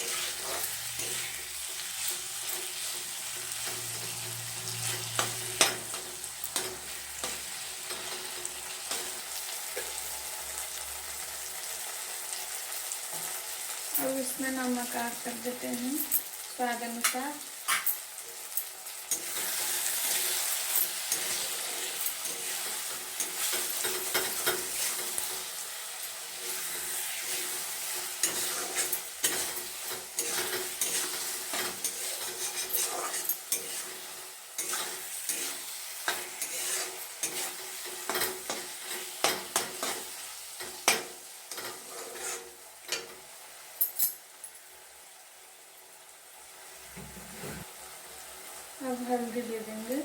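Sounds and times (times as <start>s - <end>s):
spatula scraping a pan: 0.0s - 10.0s, 19.1s - 43.2s, 47.0s - 47.7s
masala sizzling in oil: 0.0s - 50.0s.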